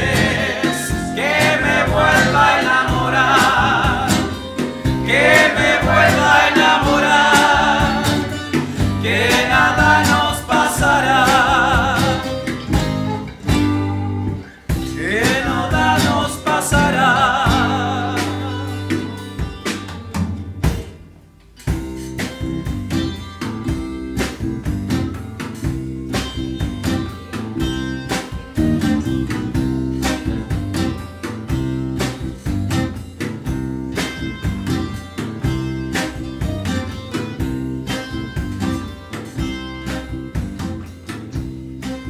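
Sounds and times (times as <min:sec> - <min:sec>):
person singing with vibrato: 0:00.0 - 0:19.1
tiple strumming: 0:00.0 - 0:21.0, 0:21.6 - 0:42.0
acoustic guitar: 0:00.0 - 0:42.0
bass: 0:00.0 - 0:42.0
drums: 0:00.0 - 0:42.0.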